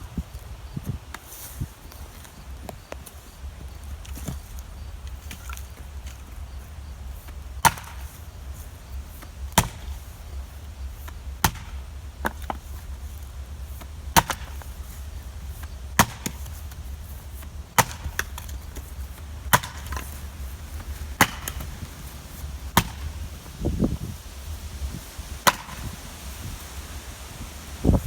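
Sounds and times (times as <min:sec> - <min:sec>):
axe chopping into a log: 0:07.6 - 0:08.1, 0:09.6 - 0:10.0, 0:11.4 - 0:12.6, 0:14.2 - 0:14.6, 0:16.0 - 0:16.6, 0:17.8 - 0:18.6, 0:19.5 - 0:20.1, 0:21.2 - 0:21.8, 0:22.8 - 0:23.1, 0:25.4 - 0:25.9
dull thud: 0:19.5 - 0:23.2.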